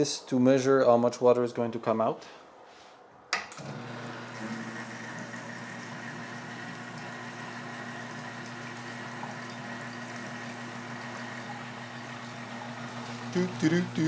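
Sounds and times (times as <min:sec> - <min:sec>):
espresso machine pump humming: 0:03.6 - 0:14.0
water flowing into container: 0:03.6 - 0:14.0.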